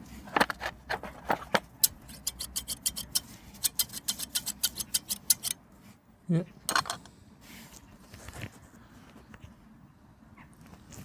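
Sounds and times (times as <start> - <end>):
scissors clicking: 1.8 - 5.6.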